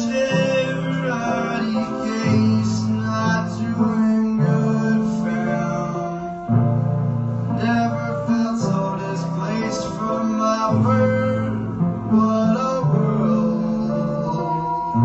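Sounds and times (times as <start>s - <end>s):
person singing: 0.0s - 6.6s, 7.5s - 15.0s.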